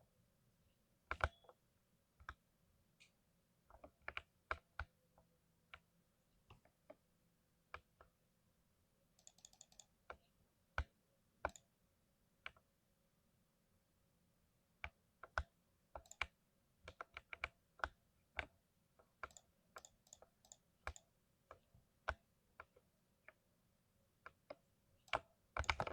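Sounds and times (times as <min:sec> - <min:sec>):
mechanical keyboard typing: 0:09.2 - 0:10.0, 0:19.2 - 0:21.0, 0:25.1 - 0:25.9.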